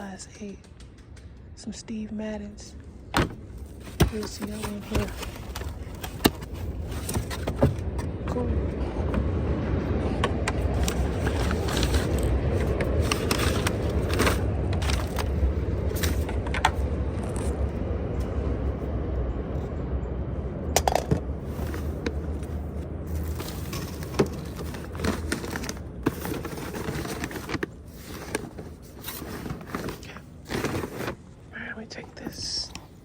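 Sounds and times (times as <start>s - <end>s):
low rumble: 0.0s - 32.2s
rummaging in a dumpster: 3.1s - 17.6s, 20.7s - 31.4s.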